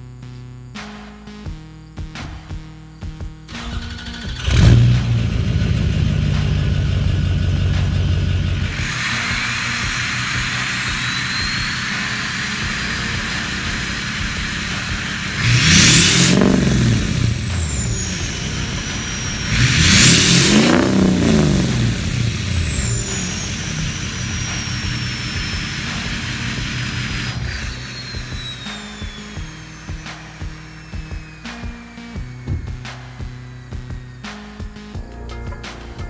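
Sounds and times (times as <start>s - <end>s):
diesel engine revving: 3.5s - 34.4s
turbo whistle: 6.3s - 34.7s.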